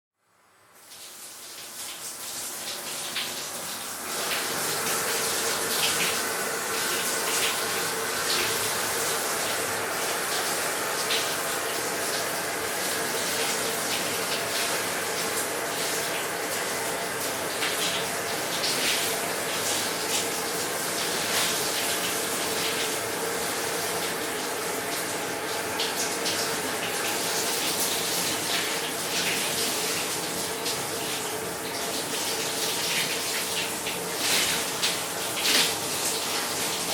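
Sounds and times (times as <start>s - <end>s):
shower water splashing: 0.7s - 36.9s.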